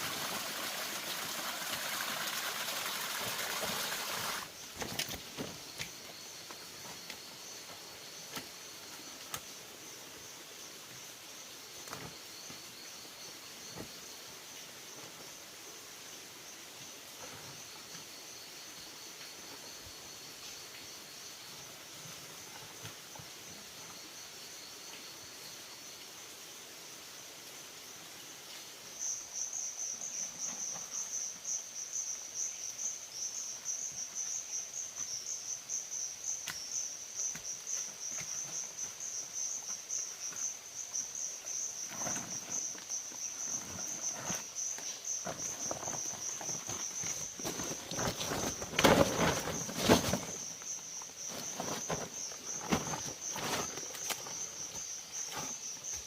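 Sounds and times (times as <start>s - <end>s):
insects trilling: 0.0s - 56.0s
rustling: 41.8s - 56.0s.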